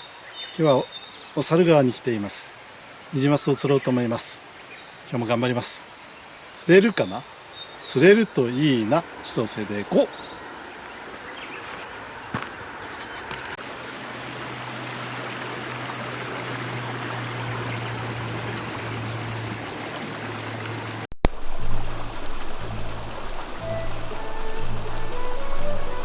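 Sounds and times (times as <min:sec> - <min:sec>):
river water rushing over rocks: 0:13.6 - 0:26.0.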